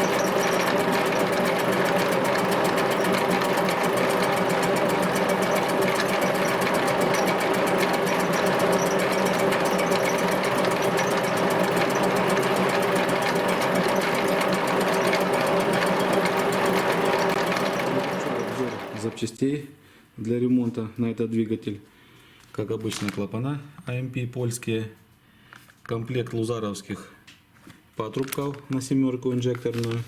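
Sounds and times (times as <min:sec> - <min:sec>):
machine clattering: 0:00.0 - 0:19.2.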